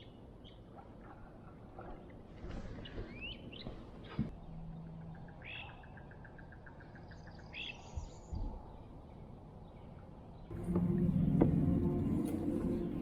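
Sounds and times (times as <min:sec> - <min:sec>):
birds chirping: 0:02.8 - 0:13.0
faint low knocks: 0:10.5 - 0:13.0.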